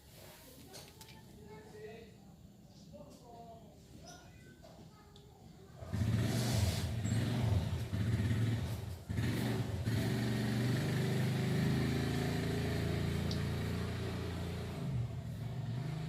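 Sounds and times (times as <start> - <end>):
vehicle engine running: 5.9 - 16.0.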